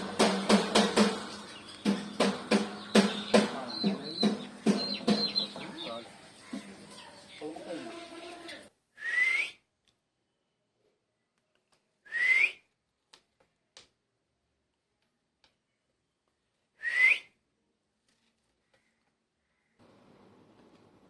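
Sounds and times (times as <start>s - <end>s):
bird rising whistled calls: 16.8s - 17.3s.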